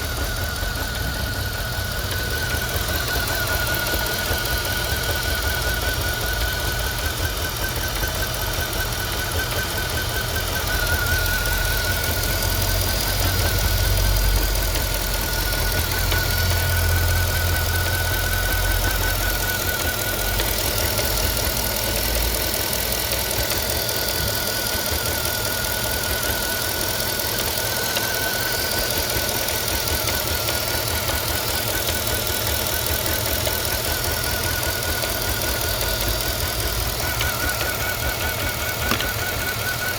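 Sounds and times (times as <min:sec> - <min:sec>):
deep engine drone: 0:00.0 - 0:08.5, 0:09.8 - 0:24.3
high engine whine: 0:00.0 - 0:22.9, 0:33.0 - 0:39.9
car engine clattering: 0:00.0 - 0:39.9.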